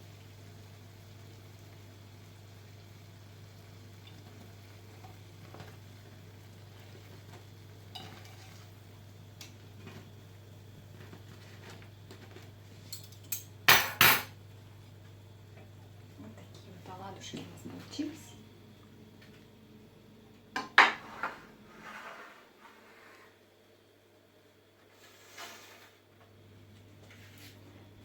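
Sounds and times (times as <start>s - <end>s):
dishes and utensils clinking: 12.8s - 14.4s
dishes clattering: 12.9s - 14.4s, 20.6s - 21.5s
steady low hum: 14.4s - 21.9s.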